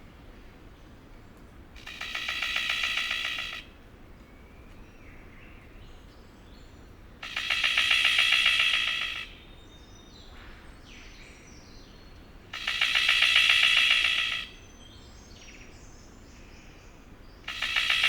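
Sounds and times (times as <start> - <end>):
bird rattling call: 1.8 - 3.7, 7.2 - 9.4, 12.5 - 14.6, 17.5 - 18.0.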